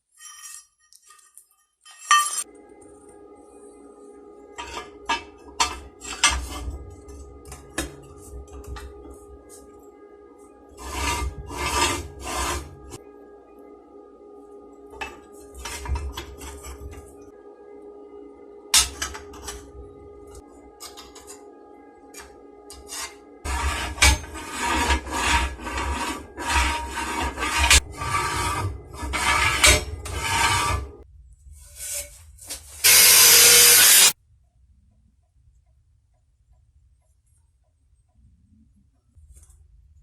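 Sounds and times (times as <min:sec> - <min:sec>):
hand file rasping on steel: 0:10.8 - 0:13.0, 0:22.7 - 0:31.0.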